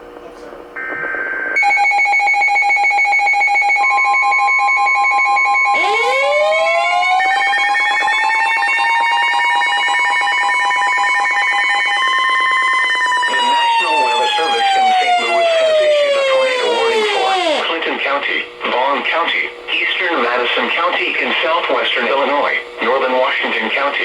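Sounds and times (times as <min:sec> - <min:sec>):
fast-pulsing two-tone alarm: 0:00.8 - 0:17.6
siren winding up: 0:00.8 - 0:17.6.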